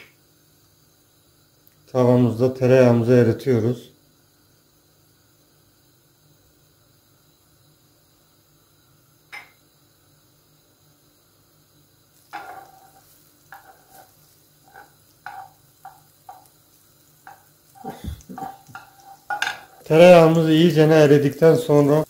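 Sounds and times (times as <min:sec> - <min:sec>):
spoon scraping metal pan: 0:12.2 - 0:16.5, 0:17.2 - 0:20.0.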